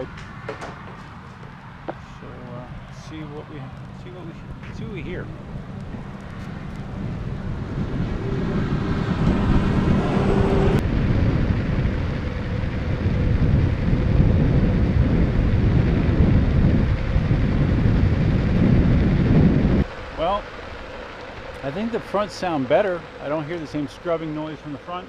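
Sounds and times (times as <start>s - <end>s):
wind on microphone: 0.0s - 24.2s
skateboard tires rolling on pavement: 0.0s - 25.0s
steady whine: 0.0s - 25.0s
tires scrubbing: 0.0s - 25.0s.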